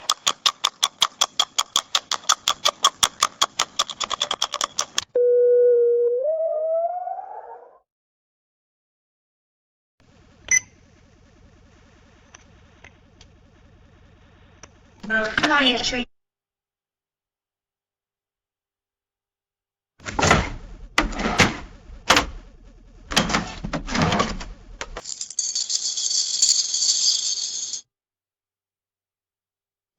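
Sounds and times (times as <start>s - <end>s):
money clicking and rustling: 0.0s - 5.1s
coins jingling: 25.0s - 27.9s.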